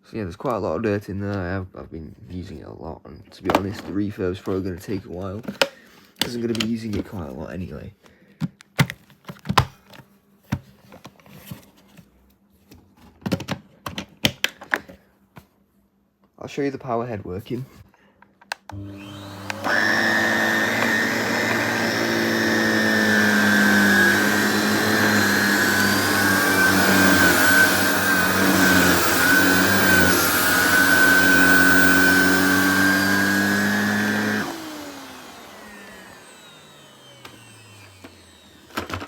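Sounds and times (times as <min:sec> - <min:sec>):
vacuum cleaner running: 0:18.7 - 0:39.0.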